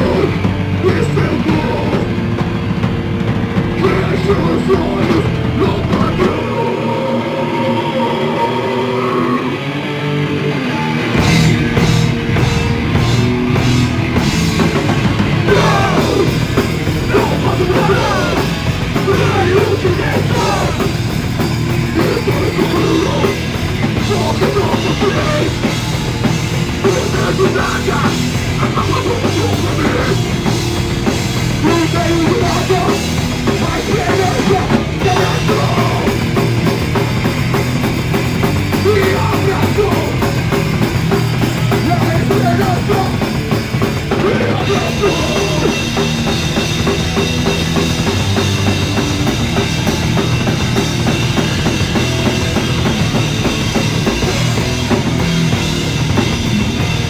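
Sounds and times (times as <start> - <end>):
person singing: 0.0 - 2.2, 3.8 - 9.7, 15.4 - 21.0, 21.9 - 25.7, 26.8 - 30.3, 31.6 - 36.4, 38.8 - 40.4, 41.8 - 43.3, 44.1 - 46.1
drum kit: 0.0 - 6.9, 10.4 - 57.0
distorted electric guitars: 0.0 - 57.0
punk band playing live: 0.0 - 57.0.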